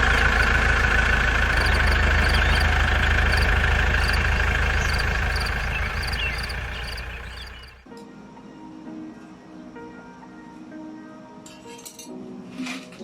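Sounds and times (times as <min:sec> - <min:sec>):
engine running steadily: 0:00.0 - 0:07.9.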